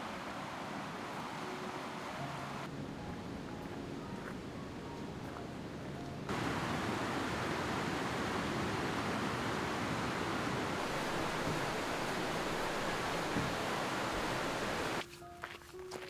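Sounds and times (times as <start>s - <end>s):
fast-flowing water rushing: 0.0s - 2.7s, 6.3s - 15.0s.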